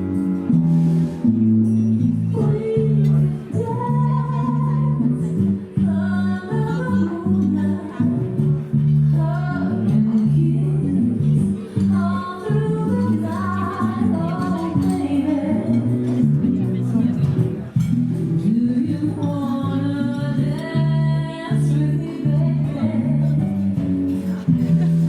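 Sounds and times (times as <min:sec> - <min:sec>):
bass and guitar: 0:00.0 - 0:25.0
person singing: 0:02.4 - 0:16.0, 0:18.4 - 0:23.6.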